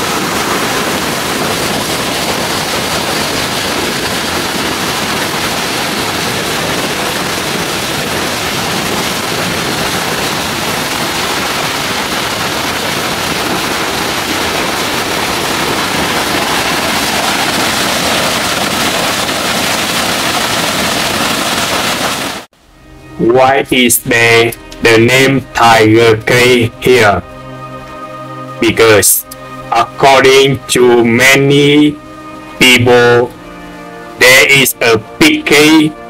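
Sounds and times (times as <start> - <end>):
waterfall roaring: 0.0 - 22.5.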